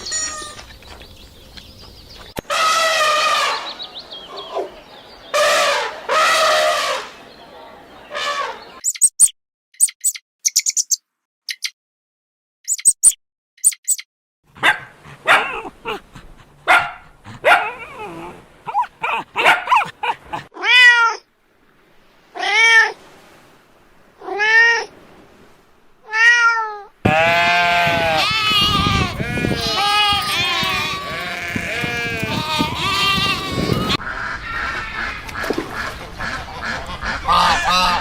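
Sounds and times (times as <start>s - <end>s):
loud full animal call: 2.5s - 4.7s, 5.3s - 7.2s, 27.1s - 35.4s
cat meowing: 20.6s - 21.2s, 26.0s - 34.0s.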